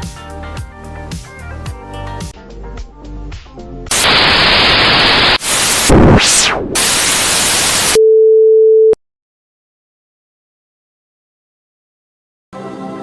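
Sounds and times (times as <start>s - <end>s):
loud static hiss: 3.9s - 8.0s.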